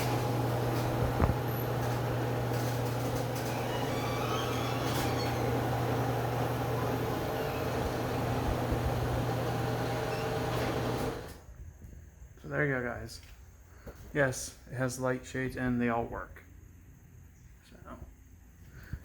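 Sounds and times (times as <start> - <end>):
garage door opener motor hum: 0.0 - 11.5.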